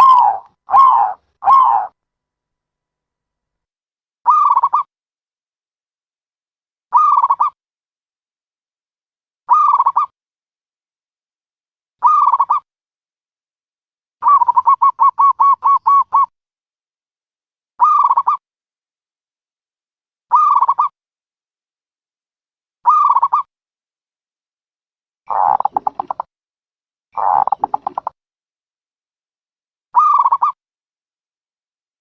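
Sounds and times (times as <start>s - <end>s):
dove cooing calls: 0.0s - 1.9s, 14.2s - 16.3s, 25.3s - 26.2s, 27.2s - 28.1s.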